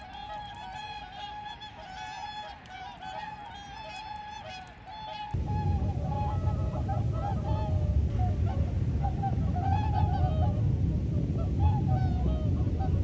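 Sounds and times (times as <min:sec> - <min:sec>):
swans honking: 0:00.0 - 0:05.4
low rumble: 0:05.4 - 0:13.0.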